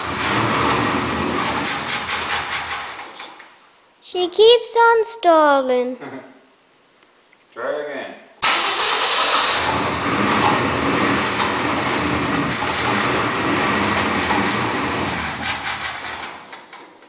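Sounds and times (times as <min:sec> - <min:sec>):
engine running and stalling: 0:00.0 - 0:03.1, 0:08.4 - 0:16.8.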